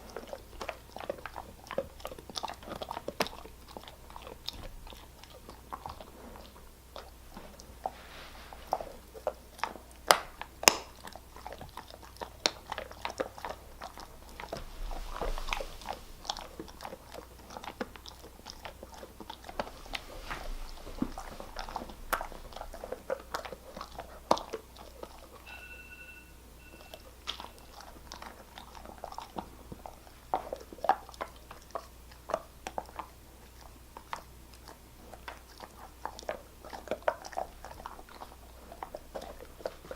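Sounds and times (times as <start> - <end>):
dog crunching hard treat: 0.0 - 25.5, 26.9 - 39.9
short steady beep: 25.4 - 27.6.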